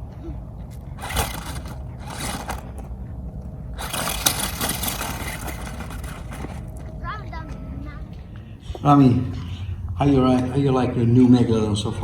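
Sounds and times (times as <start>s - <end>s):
toy truck electric motor: 0.8s - 6.9s.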